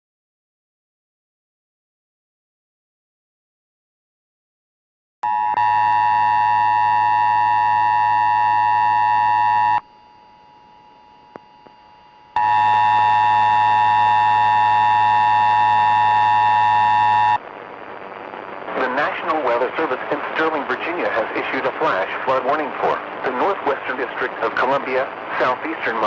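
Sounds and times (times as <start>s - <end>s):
faint tone: 5.2s - 17.4s
two-tone alarm signal: 5.2s - 17.4s.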